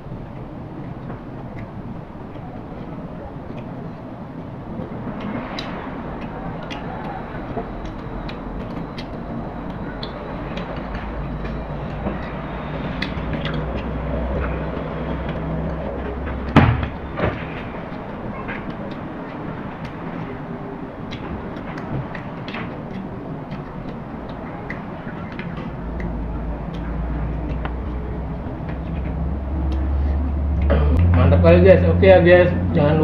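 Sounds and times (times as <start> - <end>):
low hum: 0.0 - 33.0
sharp knocks: 16.3 - 17.7.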